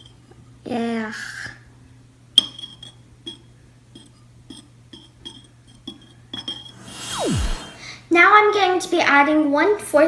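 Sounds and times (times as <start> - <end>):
spoon clinking against bowl: 2.4 - 6.6.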